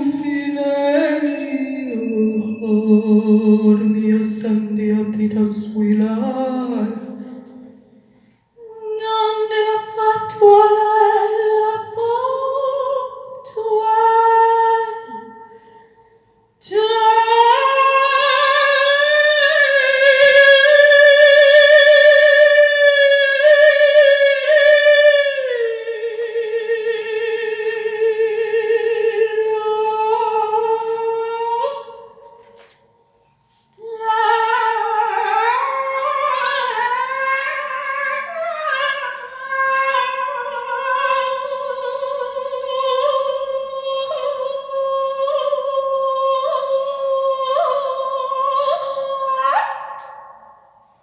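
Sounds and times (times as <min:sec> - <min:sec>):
woman singing unaccompanied: 0:08.6 - 0:15.6, 0:16.6 - 0:32.6, 0:33.8 - 0:50.3.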